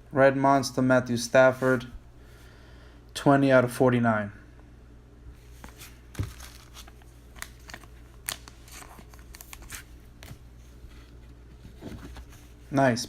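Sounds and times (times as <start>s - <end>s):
plastic packaging rustling: 5.4s - 12.8s.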